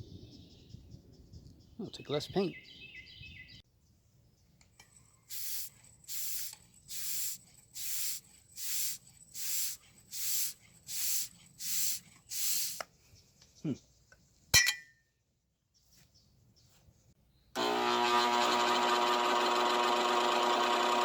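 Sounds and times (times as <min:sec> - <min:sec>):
spray paint hissing bursts: 0:05.3 - 0:12.8.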